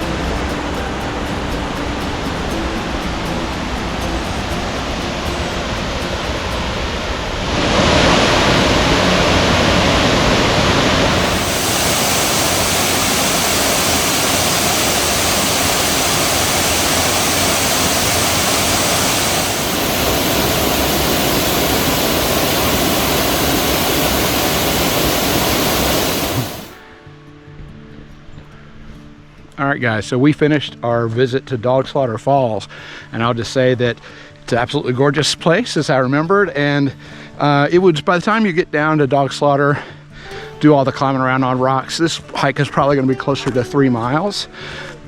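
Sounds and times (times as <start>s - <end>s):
waterfall rushing: 0.0s - 26.8s.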